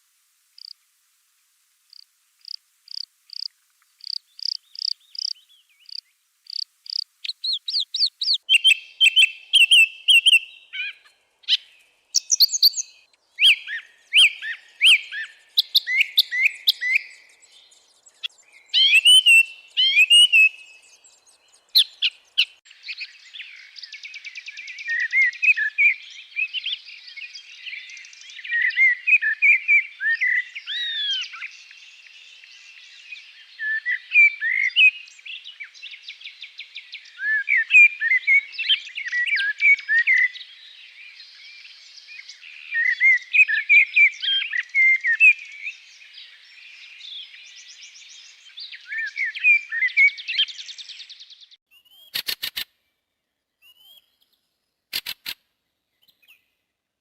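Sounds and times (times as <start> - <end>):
songbirds singing: 1.9 - 56.7.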